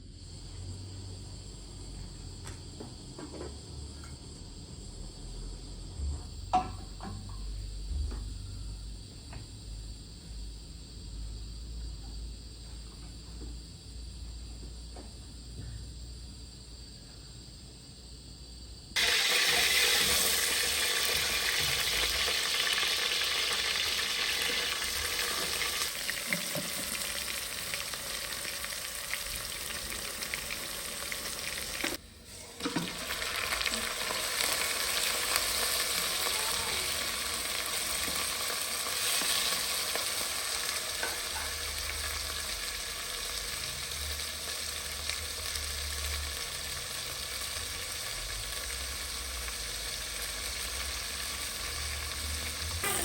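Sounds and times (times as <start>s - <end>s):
food sizzling in a pan: 19.0s - 53.0s.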